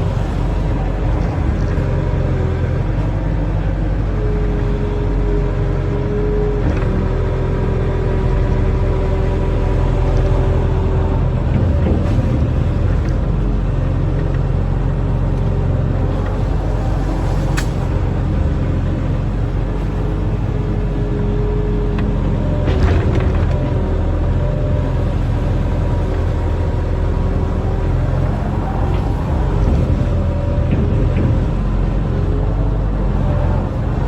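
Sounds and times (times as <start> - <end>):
diesel engine running under load: 0.0 - 34.0.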